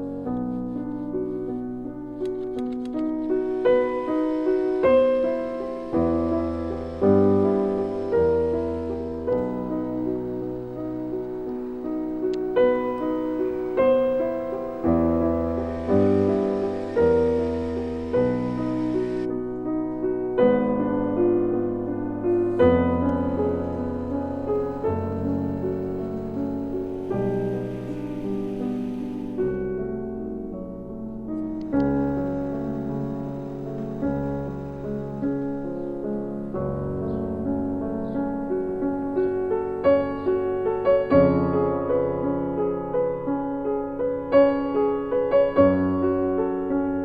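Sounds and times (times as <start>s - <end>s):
slow piano chords: 0.0s - 47.0s.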